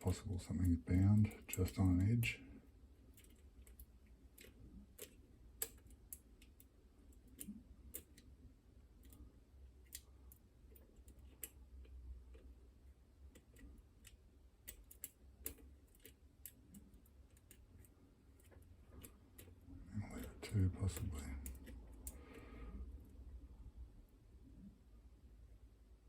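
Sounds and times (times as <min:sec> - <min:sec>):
lock picking metallic clicks: 0:00.4 - 0:02.3, 0:03.1 - 0:08.3, 0:13.3 - 0:19.6, 0:20.2 - 0:22.3.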